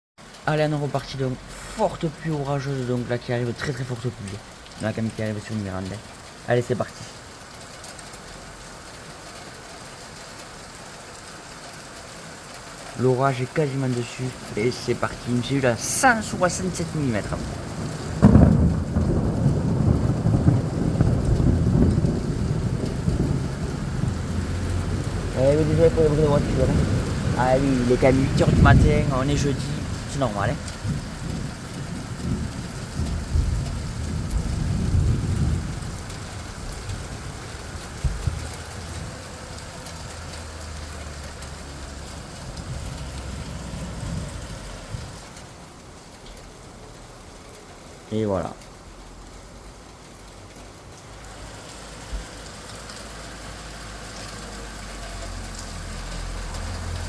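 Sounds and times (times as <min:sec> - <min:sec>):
heavy rain pouring: 0:00.2 - 0:57.0
thunder rumbling: 0:14.0 - 0:45.4.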